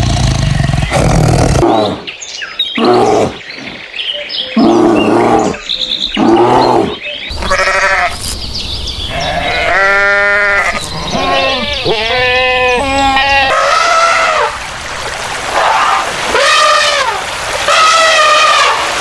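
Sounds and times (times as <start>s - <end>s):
farm animal bleating: 7.3s - 8.3s, 9.1s - 14.4s.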